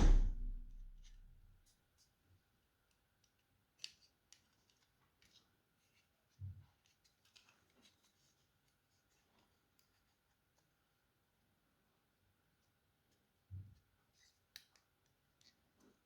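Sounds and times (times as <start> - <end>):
soft low thud: 0.0 - 1.0.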